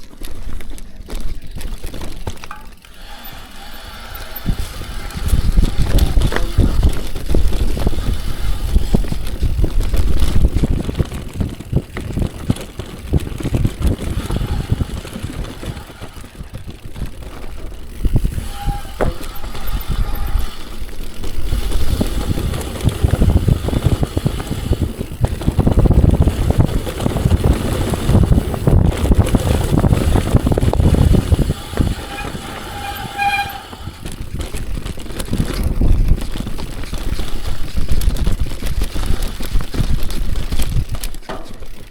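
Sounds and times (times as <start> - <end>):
mountain bike rumble and rattle: 0.0 - 41.9
wind buffeting microphone: 2.9 - 41.9
short squeals: 3.0 - 6.0, 18.2 - 20.8, 30.0 - 34.2.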